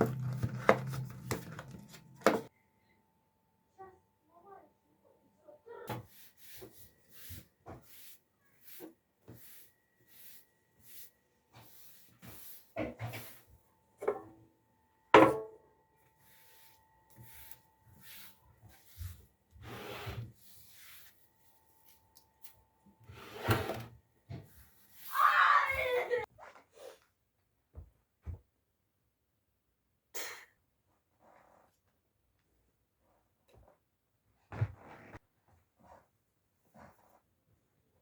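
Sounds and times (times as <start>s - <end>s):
objects rubbing and knocking: 0.0s - 2.5s, 16.3s - 21.3s, 23.0s - 25.1s.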